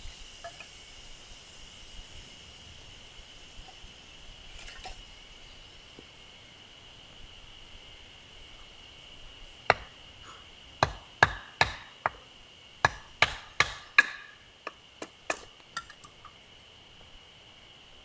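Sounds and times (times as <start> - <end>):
firewood chopping knocks: 9.7 - 10.0, 10.8 - 15.4.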